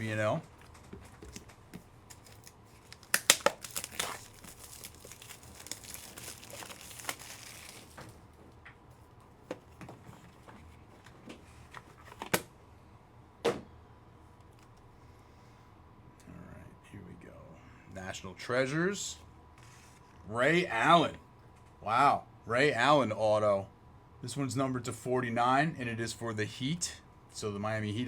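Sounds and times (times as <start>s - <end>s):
plastic packaging crinkling: 0.6s - 8.2s
packaging being torn open: 2.1s - 8.0s.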